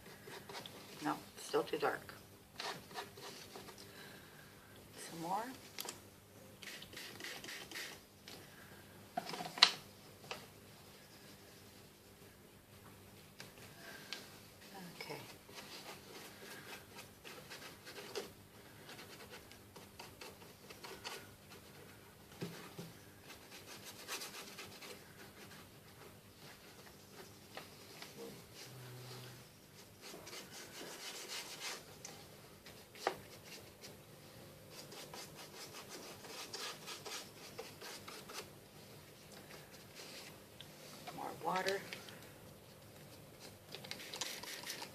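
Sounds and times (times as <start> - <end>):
paintbrush scrubbing: 6.6 - 8.0, 22.7 - 28.7, 29.8 - 32.2, 34.7 - 38.5, 43.4 - 44.9.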